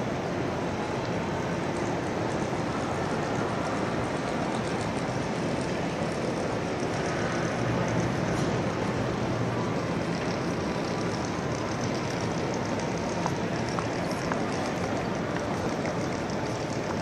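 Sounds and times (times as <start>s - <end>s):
footstep clicks: 10.2s - 17.0s.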